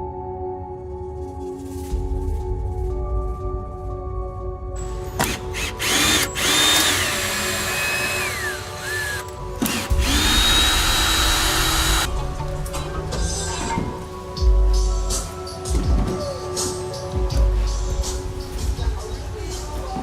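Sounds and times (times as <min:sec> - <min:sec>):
faint background music: 0:00.0 - 0:20.0
power tool motor whining: 0:05.2 - 0:12.1.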